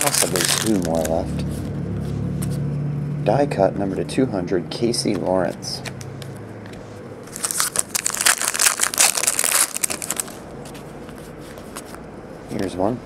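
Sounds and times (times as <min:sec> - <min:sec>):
foil wrapper crinkling: 0:00.0 - 0:01.2, 0:07.3 - 0:10.4.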